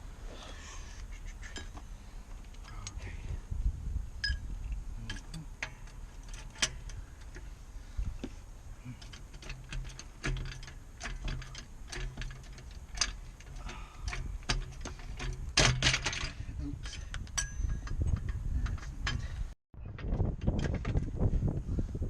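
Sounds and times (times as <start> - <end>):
hand tools clicking on metal: 5.0 - 7.5, 8.8 - 19.4.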